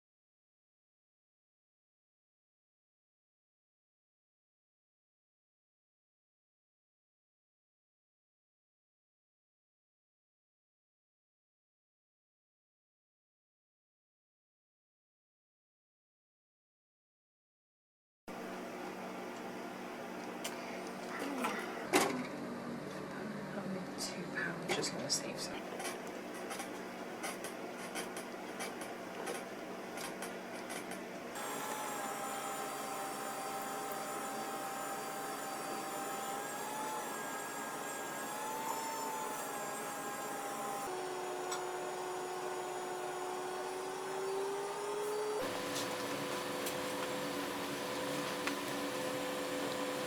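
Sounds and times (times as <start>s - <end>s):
small electric motor whine: 31.3s - 50.0s.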